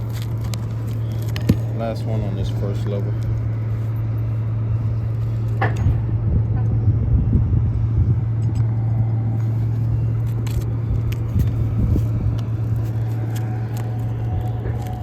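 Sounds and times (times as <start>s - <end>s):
low motor hum: 0.0s - 15.0s.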